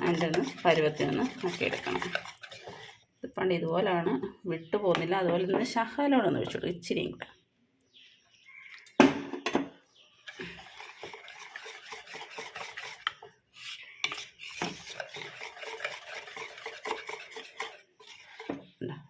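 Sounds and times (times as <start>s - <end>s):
spoon stirring batter in a bowl: 0.0s - 3.3s, 10.2s - 18.8s.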